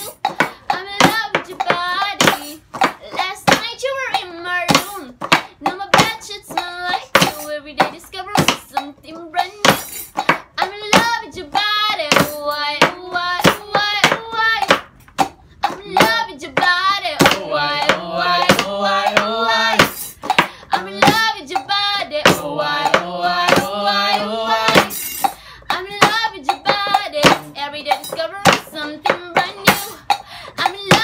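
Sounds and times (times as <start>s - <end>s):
percussion on household objects: 0.0s - 31.0s
voices singing a melody: 15.6s - 20.0s, 20.7s - 25.0s.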